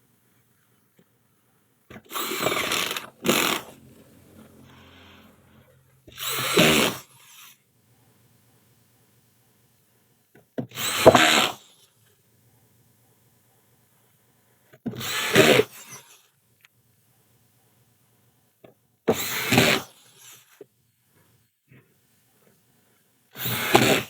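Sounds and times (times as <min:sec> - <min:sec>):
power drill running: 0:02.1 - 0:07.2.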